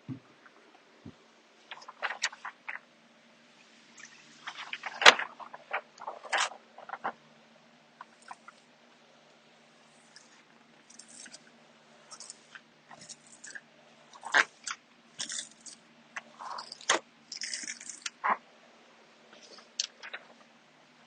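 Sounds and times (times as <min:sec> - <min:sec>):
tape crinkling: 0:01.7 - 0:02.8, 0:04.4 - 0:07.2.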